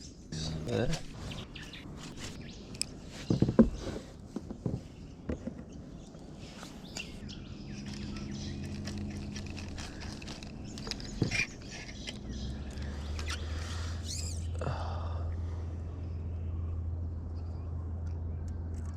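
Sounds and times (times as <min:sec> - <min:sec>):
birds chirping: 0:00.0 - 0:17.7
low hum: 0:00.2 - 0:03.0, 0:06.8 - 0:18.9.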